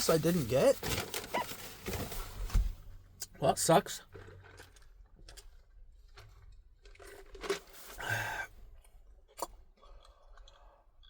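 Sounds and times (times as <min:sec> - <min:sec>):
chewing: 0:08.8 - 0:11.0.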